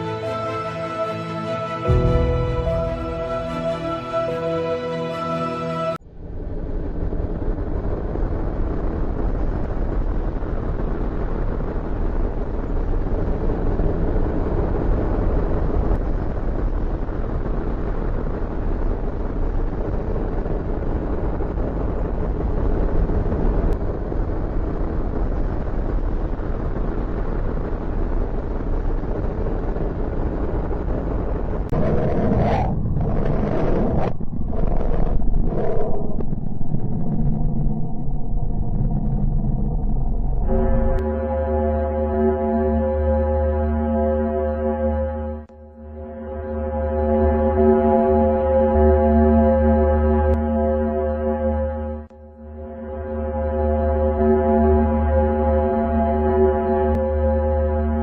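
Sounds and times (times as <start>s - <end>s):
louder rumbling surges: 6.0s - 42.9s
low rumble with hiss: 6.0s - 45.4s.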